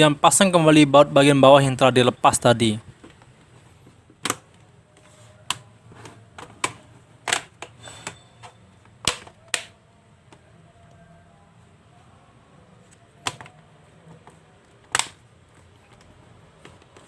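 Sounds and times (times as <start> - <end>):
plastic laptop case clicking shut: 4.2 - 4.6, 6.4 - 7.8, 9.0 - 9.8, 13.2 - 13.6, 14.9 - 15.3.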